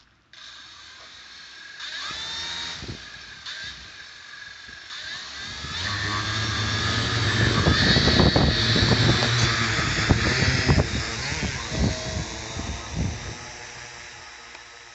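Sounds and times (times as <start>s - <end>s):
small electric motors whining: 0.0s - 14.9s
low rumble with knocks: 5.5s - 13.4s.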